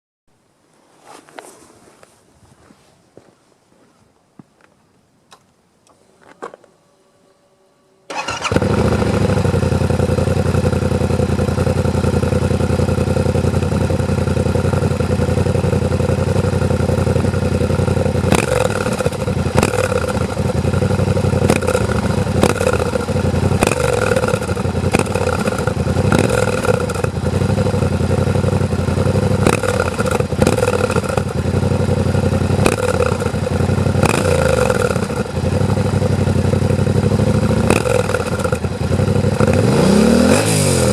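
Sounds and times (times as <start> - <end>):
motorcycle engine starting and idling: 8.1 - 40.9.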